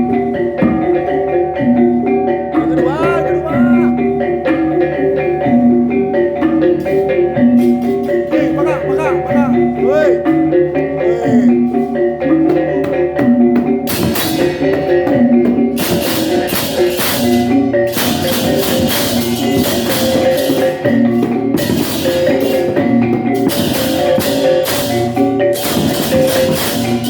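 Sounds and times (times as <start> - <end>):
tuned gong tones: 2.5 - 27.0
crashing cymbals: 13.9 - 27.0.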